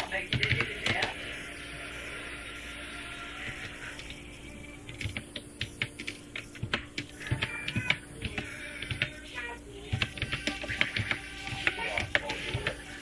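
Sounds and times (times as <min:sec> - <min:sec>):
keyboard keys clicking: 0:04.9 - 0:09.1
background music: 0:07.1 - 0:13.0.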